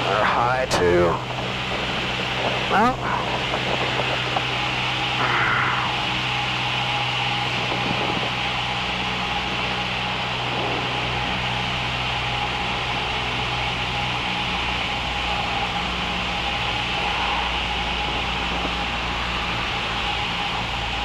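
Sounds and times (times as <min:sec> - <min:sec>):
propeller plane engine drone: 0:00.0 - 0:21.0
rushing air: 0:00.8 - 0:13.3.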